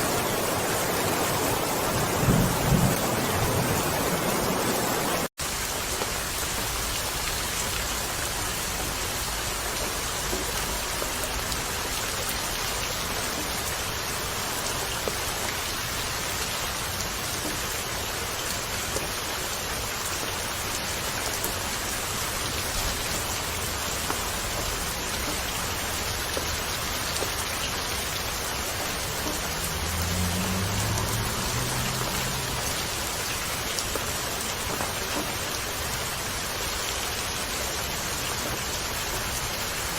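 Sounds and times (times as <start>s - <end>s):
steady rain hiss: 0.0s - 39.9s
rain drop ticks: 9.7s - 13.7s, 22.5s - 35.6s.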